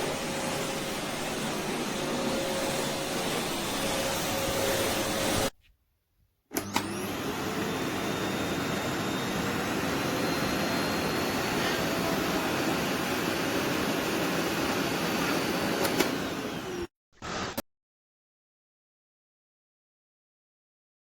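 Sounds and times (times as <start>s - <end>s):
vacuum cleaner running: 0.0s - 5.5s, 6.5s - 17.6s.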